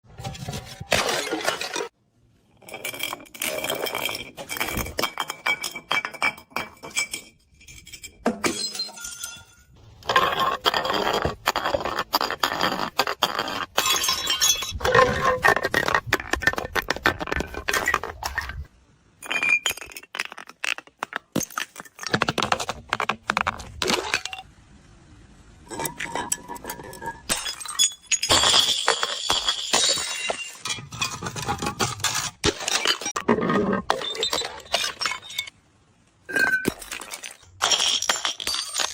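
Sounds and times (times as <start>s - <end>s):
glass bottles clinking and breaking: 0.8s - 2.0s, 2.6s - 11.8s, 13.4s - 22.7s, 25.7s - 35.6s, 36.3s - 38.9s
glass shards crunching and rattling: 13.8s - 18.6s, 25.7s - 35.6s, 36.3s - 38.9s.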